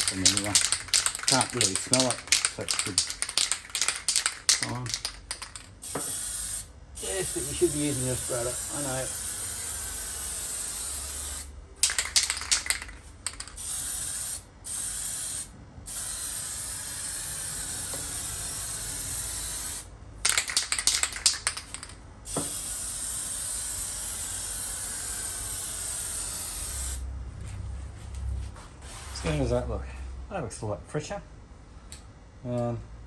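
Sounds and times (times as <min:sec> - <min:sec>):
spray can being shaken rattle: 0:00.0 - 0:06.4, 0:11.8 - 0:14.9, 0:20.2 - 0:22.8
aerosol can spraying hiss: 0:05.8 - 0:10.0, 0:13.6 - 0:19.9, 0:22.3 - 0:27.0.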